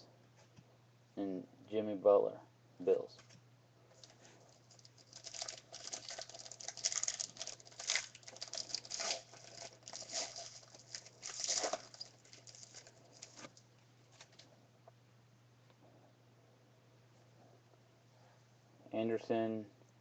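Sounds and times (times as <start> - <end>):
faint steady hum: 0.0 - 20.0
cards rustling and crinkling: 4.0 - 14.5.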